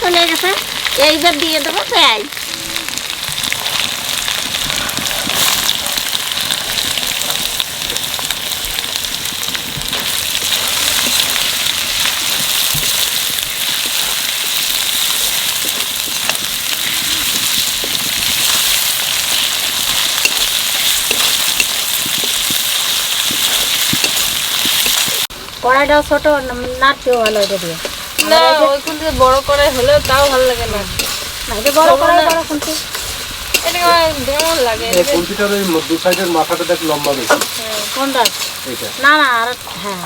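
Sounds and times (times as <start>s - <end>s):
onions sizzling in oil: 0.0s - 40.0s.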